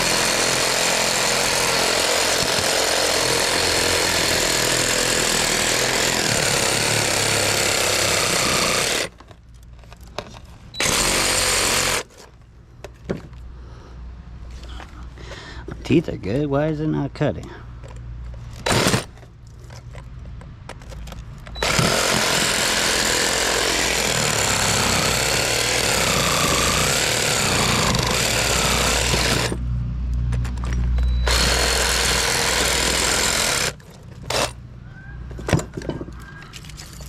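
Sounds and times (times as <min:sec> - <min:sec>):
power saw cutting steel: 0:00.0 - 0:09.1, 0:10.8 - 0:12.1, 0:21.6 - 0:29.6, 0:31.2 - 0:34.6.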